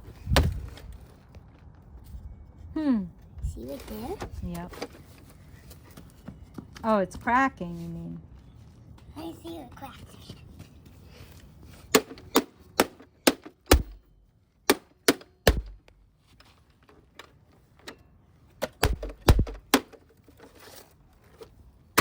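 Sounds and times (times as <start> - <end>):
blows striking plastic housing: 11.9 - 14.1, 14.7 - 15.9, 18.6 - 20.0
heavy thud: 13.7 - 14.1, 15.5 - 15.8, 18.8 - 19.7.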